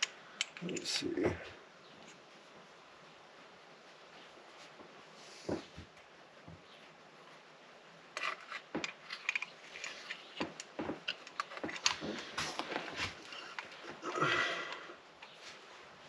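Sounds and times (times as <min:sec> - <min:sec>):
metal parts clicking and scraping: 0:08.2 - 0:13.9.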